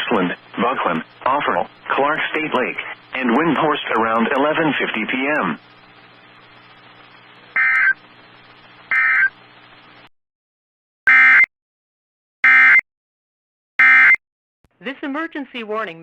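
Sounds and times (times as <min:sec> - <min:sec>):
low broadcast hum: 0:00.0 - 0:10.1, 0:14.7 - 0:16.0
shrieking digital data bursts: 0:07.6 - 0:08.0, 0:08.9 - 0:09.3.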